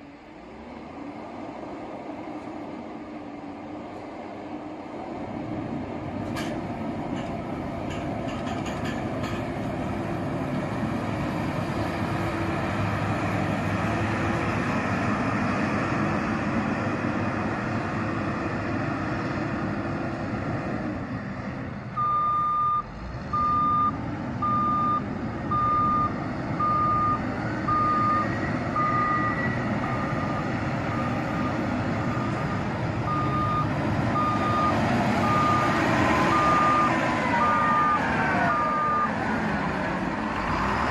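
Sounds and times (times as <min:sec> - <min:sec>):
heavy vehicle engines running: 0:00.0 - 0:40.9
reversing alarm beeping: 0:22.0 - 0:39.2.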